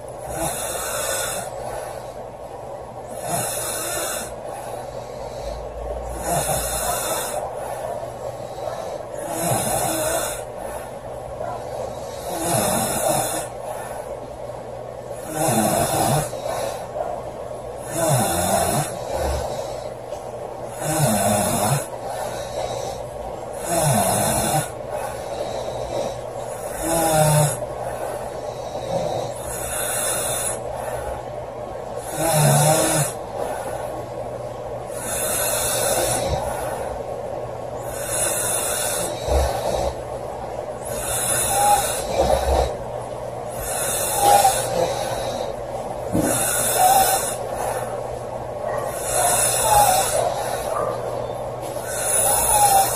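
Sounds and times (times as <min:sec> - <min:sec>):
woman snoring loudly: 0:00.2 - 0:01.6, 0:03.1 - 0:04.4, 0:06.1 - 0:07.4, 0:09.1 - 0:10.5, 0:11.9 - 0:13.6, 0:15.2 - 0:16.8, 0:17.8 - 0:19.9, 0:20.7 - 0:23.0, 0:23.6 - 0:30.6, 0:32.0 - 0:33.2, 0:37.8 - 0:40.0, 0:40.8 - 0:42.8, 0:43.5 - 0:45.6, 0:46.2 - 0:47.6, 0:49.0 - 0:50.7, 0:51.8 - 0:52.9.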